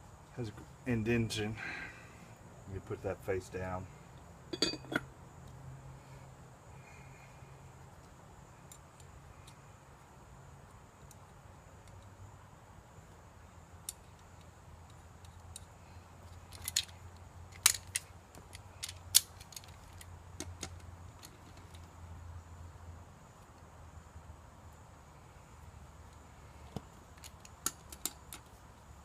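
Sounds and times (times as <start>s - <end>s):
small metal parts clinking: 4.5s - 5.1s, 13.9s - 21.9s.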